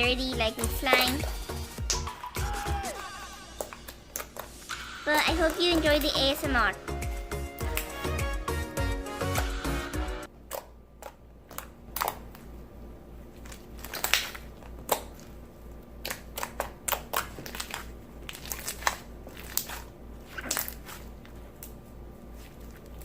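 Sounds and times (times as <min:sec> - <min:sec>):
hands squeezing wet slime: 0:16.0 - 0:23.0.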